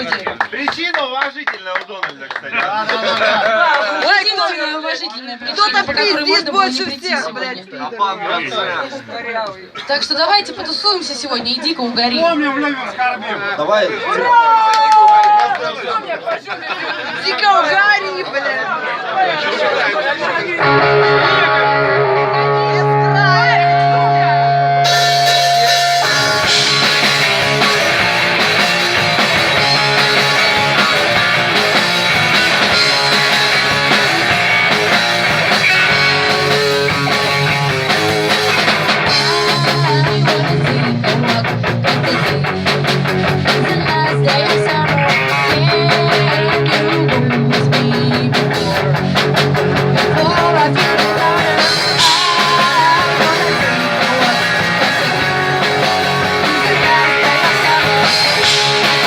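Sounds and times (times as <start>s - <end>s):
punk rock band playing live: 20.5s - 59.0s.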